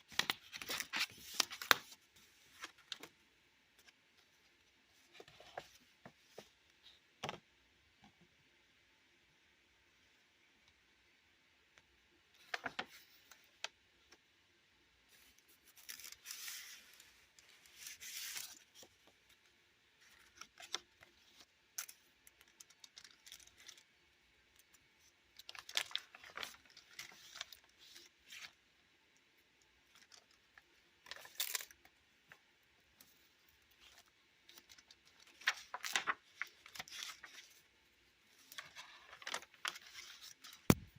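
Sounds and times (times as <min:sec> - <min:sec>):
paper pages rustling: 0:00.1 - 0:03.1, 0:04.9 - 0:06.6, 0:12.4 - 0:13.6, 0:15.1 - 0:18.9, 0:25.4 - 0:28.6, 0:29.9 - 0:31.8, 0:33.0 - 0:37.7, 0:38.3 - 0:40.9.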